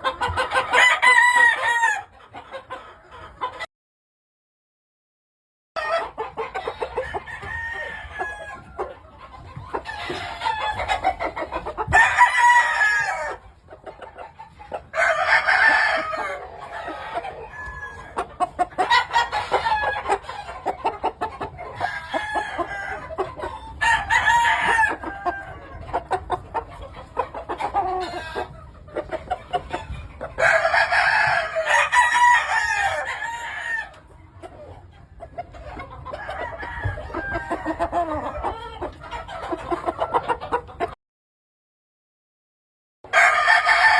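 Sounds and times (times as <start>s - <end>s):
roosters crowing: 0.0s - 2.2s, 5.8s - 8.9s, 9.6s - 13.5s, 14.8s - 26.6s, 27.3s - 28.6s, 29.7s - 34.1s, 36.0s - 40.0s, 43.1s - 43.9s
chickens clucking: 0.0s - 3.7s, 5.8s - 41.0s.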